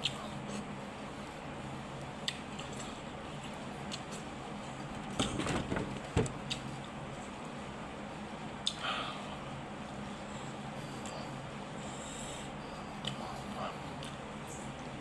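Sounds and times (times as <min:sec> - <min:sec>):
steady low hum: 0:00.0 - 0:15.0
chewing clicks and mouth smacks: 0:02.1 - 0:04.3, 0:13.0 - 0:13.2, 0:14.0 - 0:14.7.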